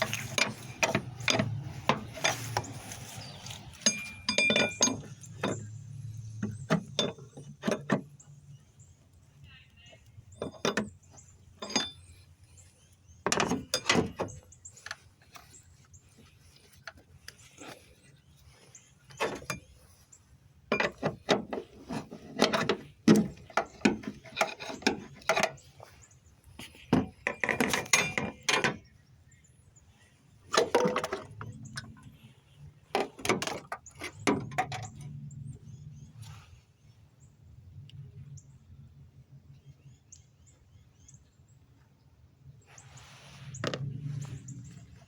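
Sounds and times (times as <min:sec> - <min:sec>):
hand tools clicking on metal: 0:03.7 - 0:05.8.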